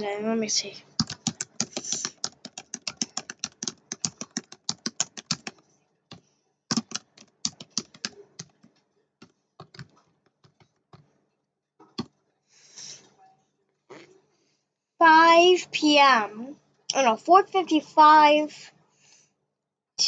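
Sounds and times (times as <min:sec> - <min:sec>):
typing on computer keyboard: 0:01.0 - 0:11.0.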